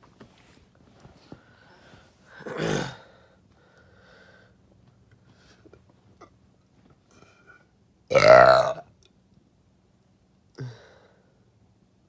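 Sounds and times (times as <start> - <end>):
faint breathing: 1.2 - 4.6.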